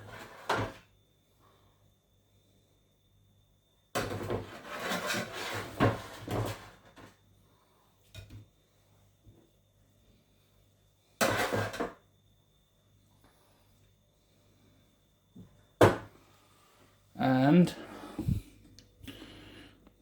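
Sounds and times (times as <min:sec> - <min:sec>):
scraping and rustling: 0:04.1 - 0:06.9.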